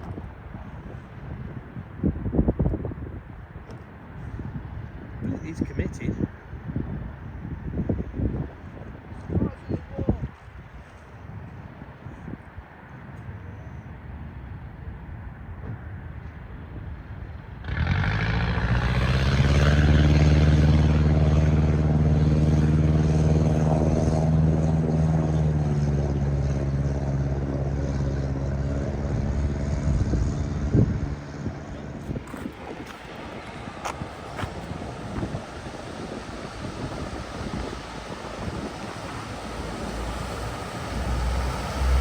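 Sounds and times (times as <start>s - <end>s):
vehicle engine: 17.3s - 42.0s
hiss of water: 32.5s - 42.0s.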